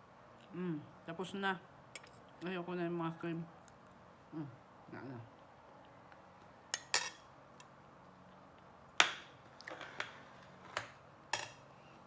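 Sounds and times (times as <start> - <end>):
dishes and cutlery clinking: 6.8 - 7.2.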